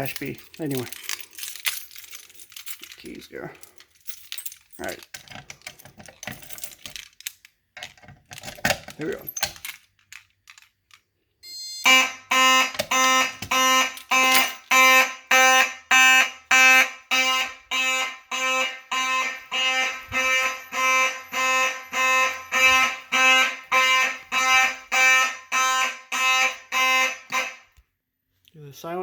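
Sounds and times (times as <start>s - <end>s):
fire alarm horn pulsing: 11.4s - 27.8s.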